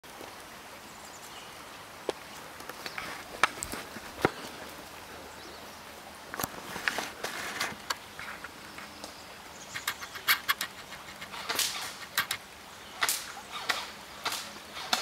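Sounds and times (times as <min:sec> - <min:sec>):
outdoor hiss: 0:00.0 - 0:15.0
footsteps crunching in woods: 0:02.1 - 0:05.6.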